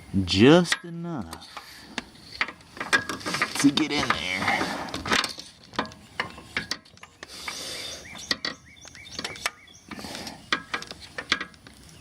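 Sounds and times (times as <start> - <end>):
metal scraping on metal: 0.6 - 8.6.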